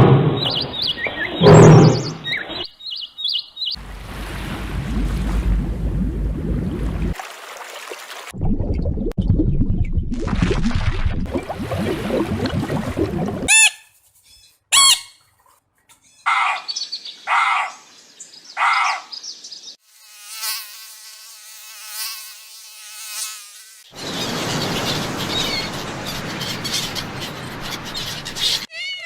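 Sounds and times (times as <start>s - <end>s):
sweeping bird chirps: 0.3s - 3.8s, 23.9s - 28.7s
dense chorus of animal noise: 18.5s - 19.2s, 24.0s - 28.7s
wavering insect buzz: 19.8s - 26.8s.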